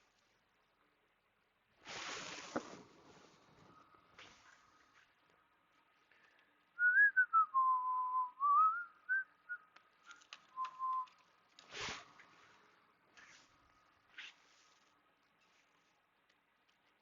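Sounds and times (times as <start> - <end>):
person whistling: 6.8 - 9.6, 10.5 - 11.1.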